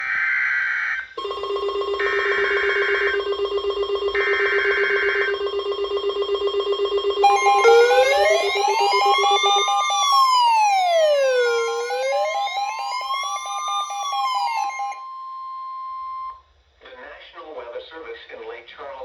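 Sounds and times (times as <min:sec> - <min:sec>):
pulsing ringing tone: 0:01.2 - 0:16.3
siren-like wails: 0:02.0 - 0:15.3.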